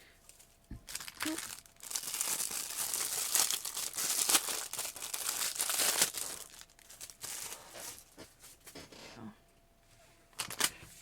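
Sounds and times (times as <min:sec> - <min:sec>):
paper crinkling and rustling: 0:00.9 - 0:09.0, 0:10.4 - 0:11.0.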